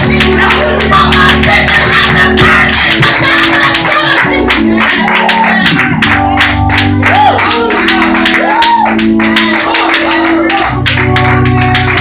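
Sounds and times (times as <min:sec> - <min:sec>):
live church band music: 0:00.0 - 0:12.0
preacher shouting: 0:08.4 - 0:10.8.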